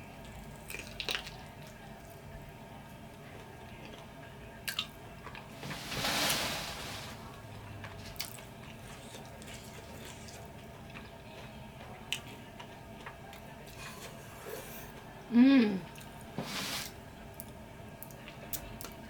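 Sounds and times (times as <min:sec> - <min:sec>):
person chewing food: 0:08.0 - 0:15.1.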